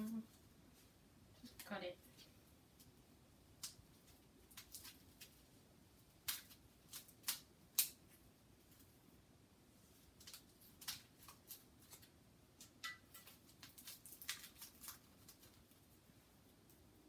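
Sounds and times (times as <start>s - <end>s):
scissors snipping packaging: 6.1s - 8.0s, 10.2s - 15.7s.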